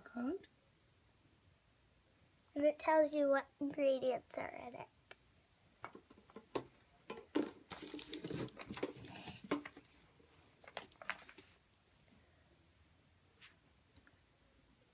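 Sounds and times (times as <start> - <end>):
crinkling rustles: 5.9 - 11.9.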